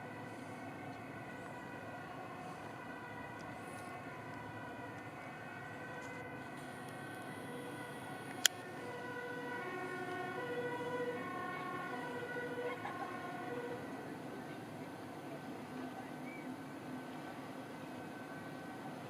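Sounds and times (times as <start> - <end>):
two-tone siren: 0.0 - 14.3
steady background hum: 0.0 - 19.0.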